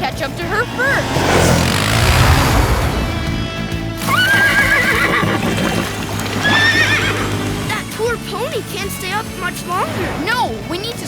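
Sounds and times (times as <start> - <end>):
background music: 0.0 - 11.0
rushing noise: 0.2 - 5.4
cartoon pony whinnying: 4.0 - 7.3.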